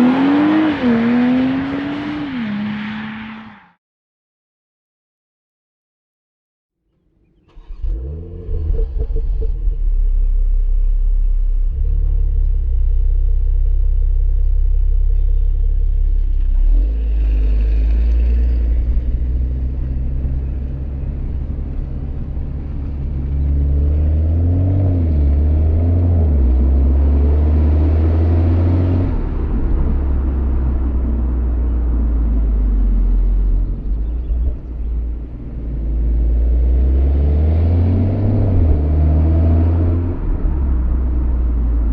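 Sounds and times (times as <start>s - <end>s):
car exhaust rumble: 7.4s - 41.9s.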